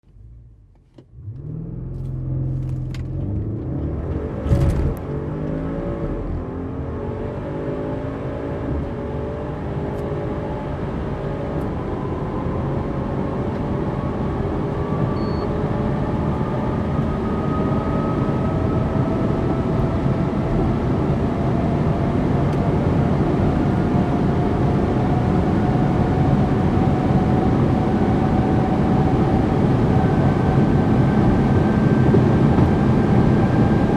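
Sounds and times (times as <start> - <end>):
car engine accelerating: 0.1 - 33.9
wind and road noise: 0.8 - 33.9
thump: 4.4 - 5.0.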